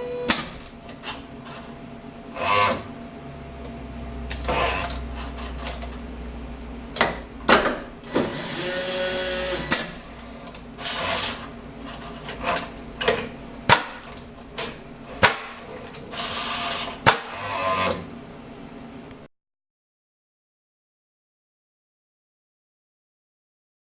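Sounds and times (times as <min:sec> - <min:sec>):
low steady machine hum: 0:00.0 - 0:19.3
air hissing: 0:08.1 - 0:10.0.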